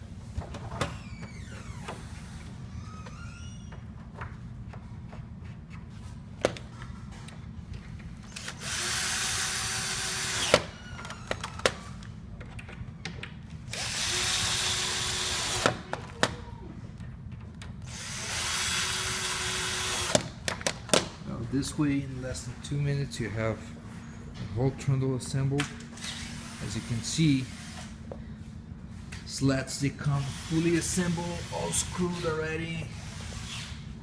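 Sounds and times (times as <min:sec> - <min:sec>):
power drill driving screws: 0:08.3 - 0:11.2, 0:13.7 - 0:15.8, 0:17.9 - 0:20.2.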